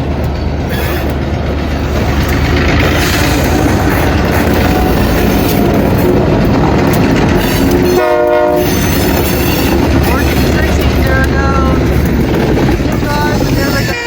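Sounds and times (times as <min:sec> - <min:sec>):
freight train rumbling past: 0:00.0 - 0:14.0
train horn blast: 0:00.7 - 0:01.2, 0:02.8 - 0:05.7, 0:07.8 - 0:10.8, 0:13.2 - 0:14.0.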